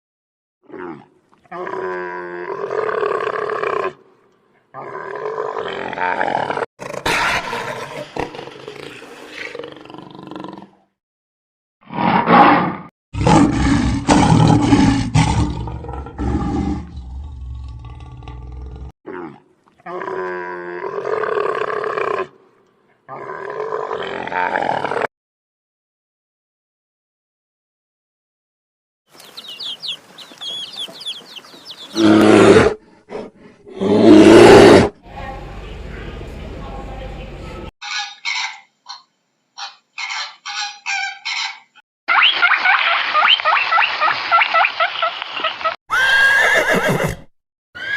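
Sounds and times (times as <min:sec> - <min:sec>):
large animal roaring: 0:00.6 - 0:04.0, 0:11.8 - 0:22.4, 0:23.1 - 0:25.1, 0:31.9 - 0:35.0
chickens chirping: 0:29.1 - 0:32.2, 0:37.9 - 0:45.8
chicken harsh call: 0:29.2 - 0:32.7, 0:39.6 - 0:47.9.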